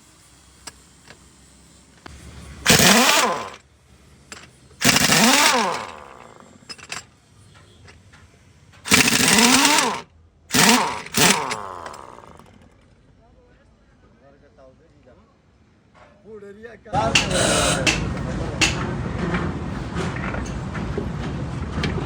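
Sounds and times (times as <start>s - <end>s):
power tool bursts: 2.1s - 3.6s, 4.3s - 7.0s, 8.9s - 12.8s, 17.0s - 18.8s.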